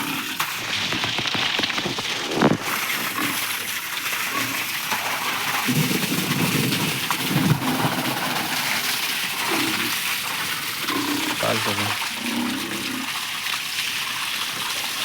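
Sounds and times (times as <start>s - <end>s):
pigs grunting: 2.0s - 4.8s, 9.4s - 13.2s
hiss of spraying water: 7.6s - 13.1s.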